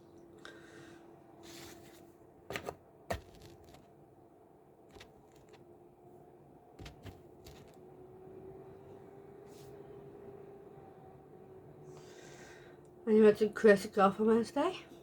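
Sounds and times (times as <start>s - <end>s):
faint steady hum: 0.0s - 15.0s
small objects clicking and tapping: 2.5s - 3.9s, 4.9s - 5.6s, 6.8s - 7.8s.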